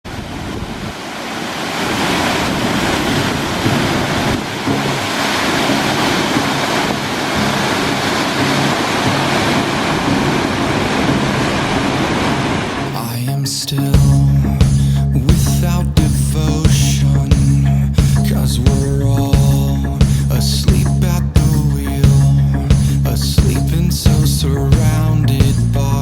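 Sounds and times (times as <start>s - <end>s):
steady rushing noise: 0.1s - 25.7s
low held tones: 3.6s - 26.0s.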